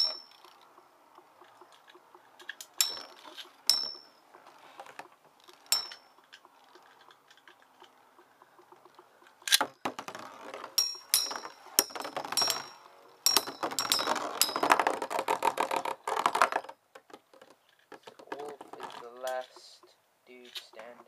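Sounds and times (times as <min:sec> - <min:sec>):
metallic clinks of tops colliding: 0:00.0 - 0:00.4, 0:02.8 - 0:04.1, 0:05.7 - 0:06.1, 0:10.8 - 0:14.6.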